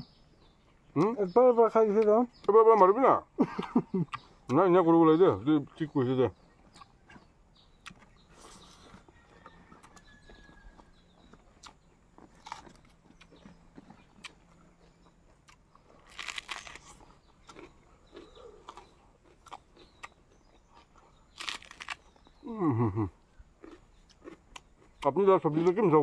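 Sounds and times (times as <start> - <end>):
faint chewing with clicks: 0.2 - 4.7, 5.4 - 26.0
crunchy bites: 6.6 - 26.0.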